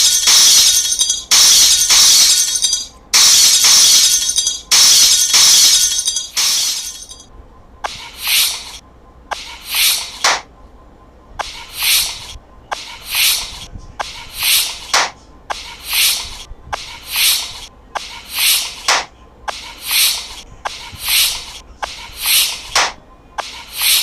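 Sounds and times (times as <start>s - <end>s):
rhythmic rubbing strokes: 0.0s - 7.2s, 11.4s - 24.0s.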